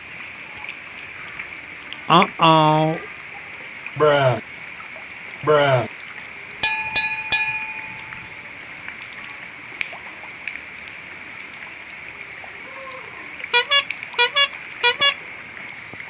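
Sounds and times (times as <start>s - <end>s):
rain and running water: 0.0s - 16.0s
short horn toots: 13.5s - 15.2s.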